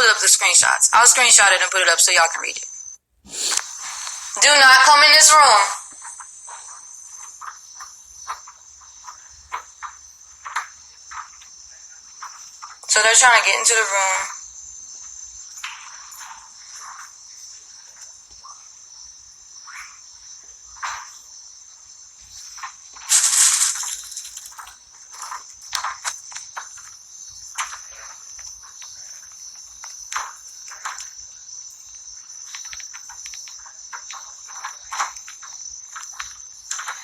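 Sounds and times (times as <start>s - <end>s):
high-pitched insect chorus: 0.0s - 37.0s
loud burst of noise: 3.3s - 6.1s, 23.1s - 24.5s.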